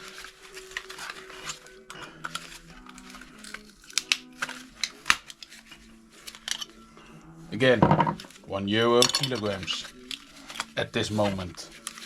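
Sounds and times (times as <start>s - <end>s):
background music: 0.0s - 12.0s
power adapter being pried apart: 2.2s - 5.5s.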